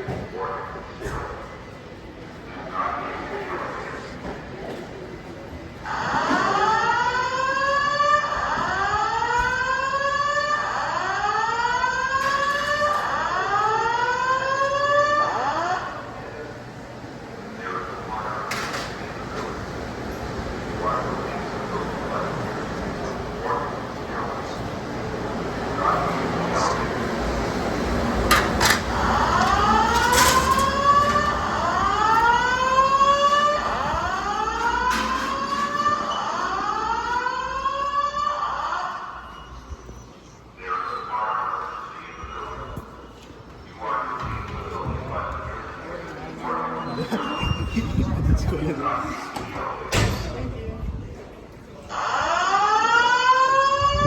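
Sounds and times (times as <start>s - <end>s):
fire alarm whoop tone: 51.9s - 54.0s.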